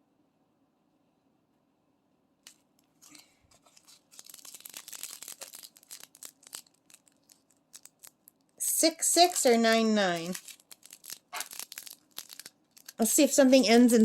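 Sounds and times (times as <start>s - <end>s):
small beads rattling: 2.5s - 13.4s
plastic bag crinkling: 2.5s - 13.8s.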